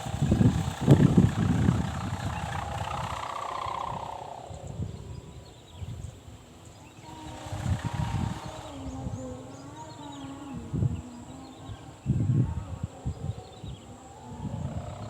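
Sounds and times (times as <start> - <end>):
kite hummer raspy drone: 0.0 - 15.0.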